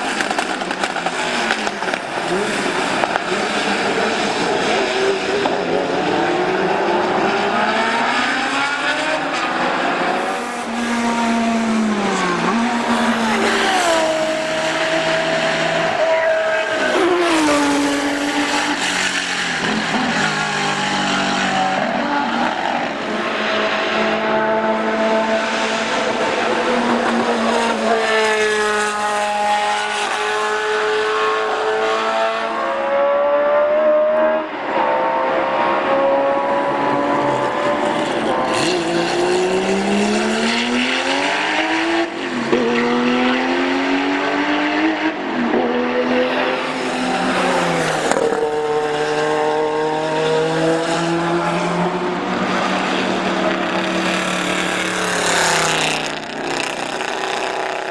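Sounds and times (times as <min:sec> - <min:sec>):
racing car engines revving: 0:00.0 - 0:57.9.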